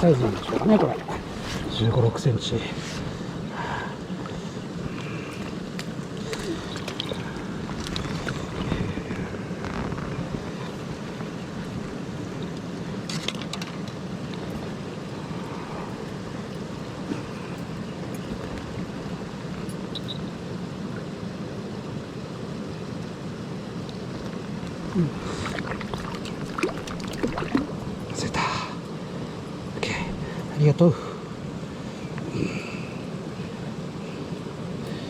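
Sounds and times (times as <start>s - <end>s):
stream water rushing: 0.0s - 9.6s, 24.1s - 30.4s.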